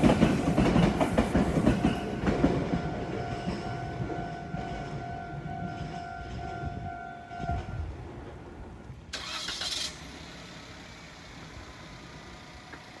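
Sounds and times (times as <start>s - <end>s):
departing train rumble: 0.0s - 13.0s
level crossing warning bell: 1.9s - 8.0s
road vehicles running: 9.2s - 13.0s.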